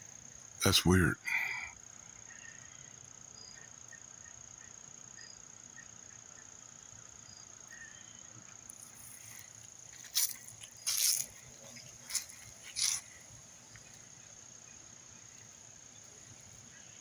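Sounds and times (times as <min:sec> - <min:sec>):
soft insect chirps: 0:00.0 - 0:17.0
high-pitched insect drone: 0:07.2 - 0:14.3.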